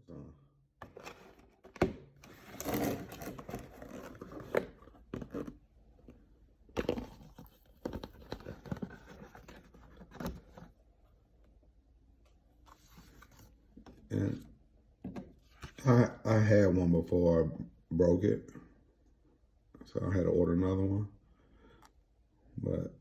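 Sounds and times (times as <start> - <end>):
packaging rustling and tearing: 2.2 - 5.5.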